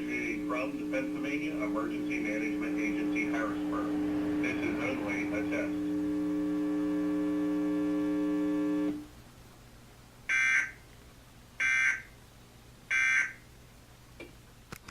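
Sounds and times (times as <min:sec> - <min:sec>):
steady buzzing tone: 0:00.0 - 0:09.2.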